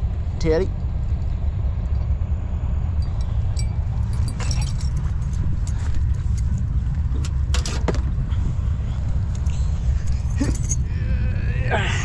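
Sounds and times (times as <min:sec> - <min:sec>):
steady low rumble: 0:00.0 - 0:12.0
jingling: 0:03.0 - 0:08.4, 0:10.0 - 0:11.0.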